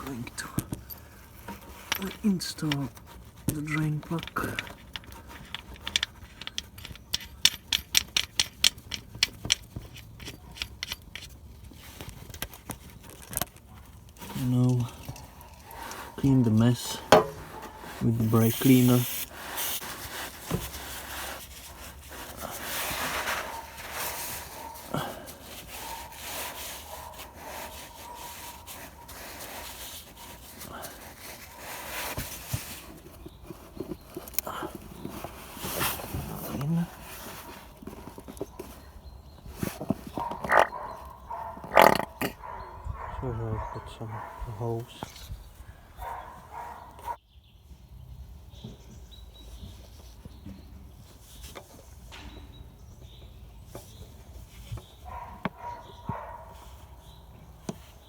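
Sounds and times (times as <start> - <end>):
rubbing and scrubbing: 13.7 - 38.8.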